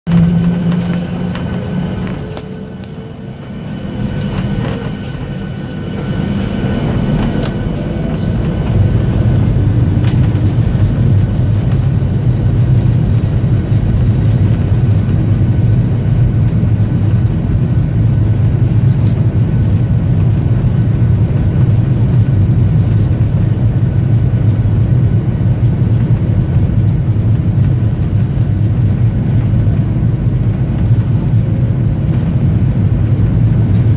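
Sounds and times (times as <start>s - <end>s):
jet engines spooling up: 0.1s - 15.6s.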